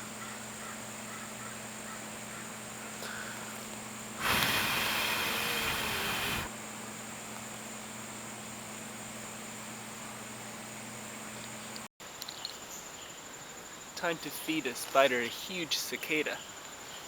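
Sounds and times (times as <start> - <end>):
cicada harsh buzz: 4.2 - 6.5.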